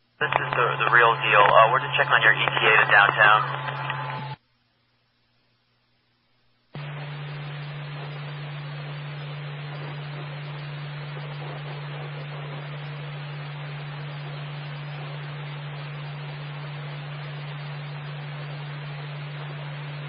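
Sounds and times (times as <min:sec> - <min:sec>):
radio static hiss with low hum: 0:00.0 - 0:20.0
radio squelch opening: 0:00.2 - 0:04.4.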